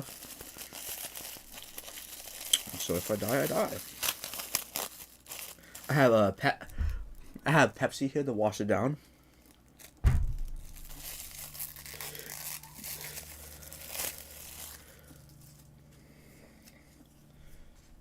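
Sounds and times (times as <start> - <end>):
paper or plastic crinkling: 0.0 - 6.8, 9.4 - 15.8
thump: 6.7 - 7.2, 10.0 - 10.7.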